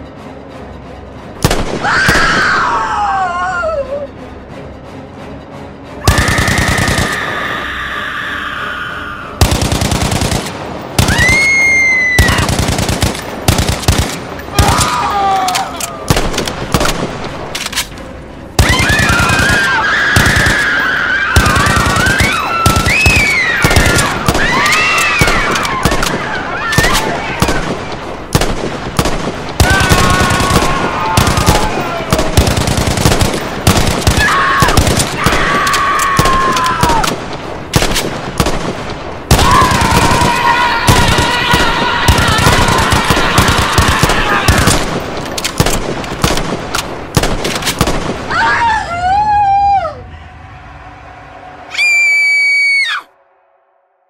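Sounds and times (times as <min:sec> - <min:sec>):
people screaming: 0:01.8 - 0:04.1, 0:06.0 - 0:09.4, 0:11.0 - 0:12.6, 0:14.5 - 0:16.1, 0:18.6 - 0:27.7, 0:29.6 - 0:32.4, 0:34.1 - 0:37.1, 0:39.3 - 0:44.8, 0:48.3 - 0:53.2
rapid automatic gunfire: 0:09.4 - 0:11.3, 0:12.2 - 0:14.2, 0:21.4 - 0:26.2, 0:26.8 - 0:35.6, 0:37.8 - 0:45.0.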